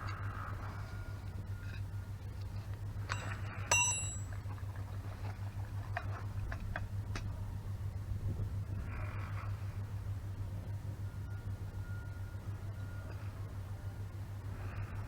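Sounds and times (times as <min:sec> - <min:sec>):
low hum: 0:00.0 - 0:15.0
metal clatter: 0:03.0 - 0:04.4
metal struck ringing: 0:03.1 - 0:04.3.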